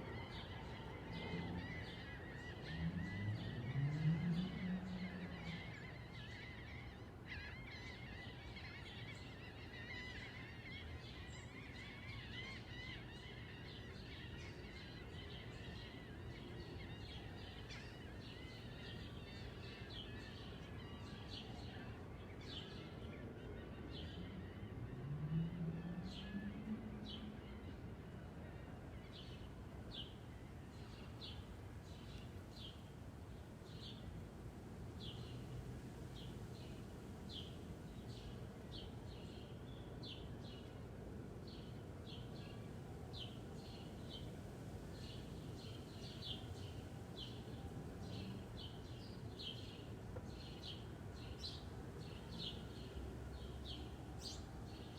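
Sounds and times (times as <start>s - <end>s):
distant traffic hum: 0.0s - 54.9s
vehicle passing: 2.6s - 5.8s, 24.1s - 27.4s.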